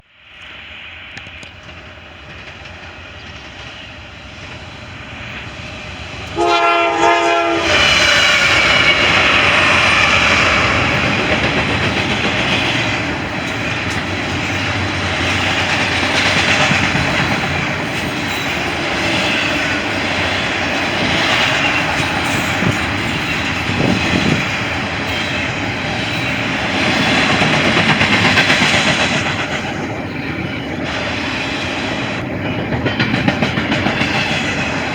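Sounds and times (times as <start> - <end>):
train rumbling past: 0.2 - 34.9
train horn blast: 6.3 - 9.0
wheels clacking over rail joints: 7.3 - 34.9.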